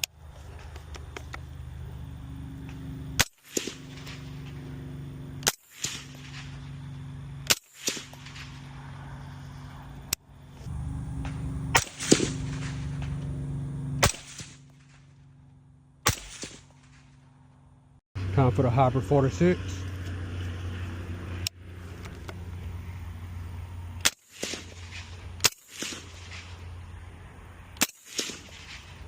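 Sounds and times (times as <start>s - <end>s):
suppressed rifle shots: 10.7s - 15.0s, 16.0s - 17.0s, 24.0s - 26.6s, 27.8s - 29.0s.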